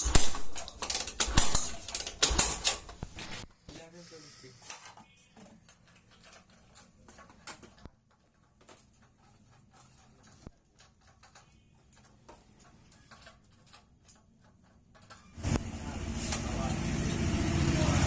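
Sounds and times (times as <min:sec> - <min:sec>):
tool clicks and knocks: 0:00.0 - 0:03.4.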